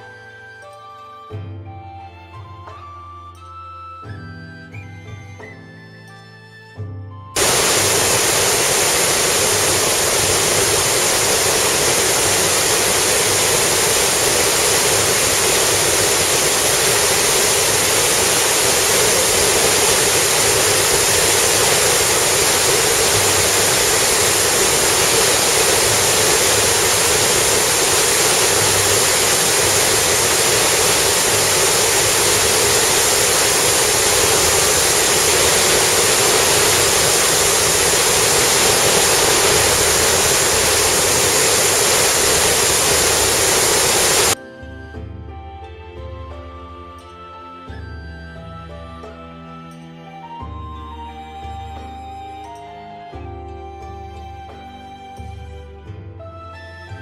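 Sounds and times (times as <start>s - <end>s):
faint high whine: 7.4s - 44.4s
rain: 7.4s - 44.4s
tyres hissing on wet road: 7.4s - 44.4s.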